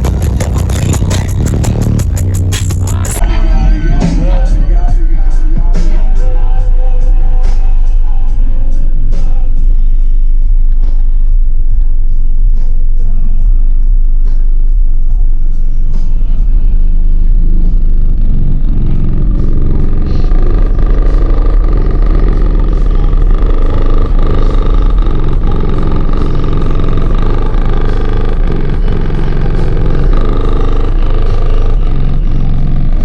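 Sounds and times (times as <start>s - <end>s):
loud deep subwoofer bass: 0.0s - 33.0s
steady higher tone: 11.4s - 33.0s.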